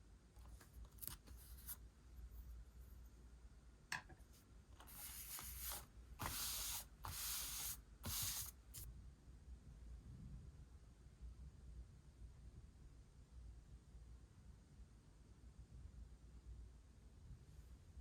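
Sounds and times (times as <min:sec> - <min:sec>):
scratchy paper rubbing: 0:04.8 - 0:08.9.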